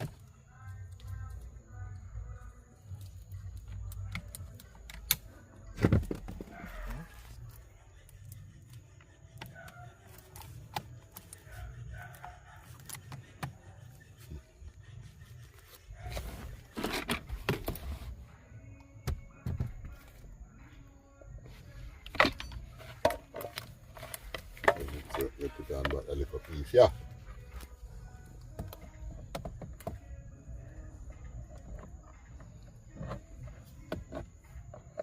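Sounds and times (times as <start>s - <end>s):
tools and parts clicking: 22.1s - 25.3s.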